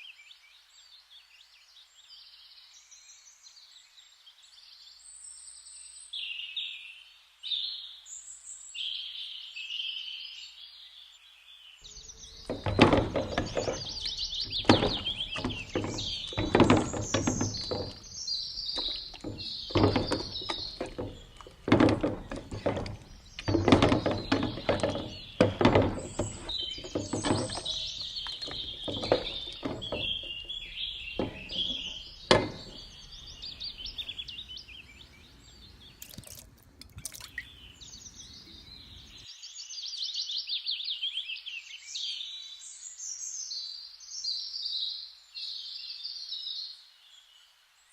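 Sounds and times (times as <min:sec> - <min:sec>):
small birds chirping: 0:00.0 - 0:47.9
knocks and clatters: 0:12.4 - 0:34.2.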